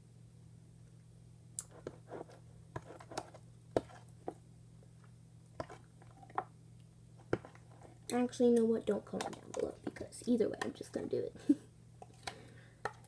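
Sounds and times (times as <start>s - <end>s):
steady low hum: 0.0s - 13.0s
slime stirring clicks and smacks: 2.8s - 4.4s, 5.5s - 6.5s, 7.2s - 11.0s, 12.0s - 13.0s.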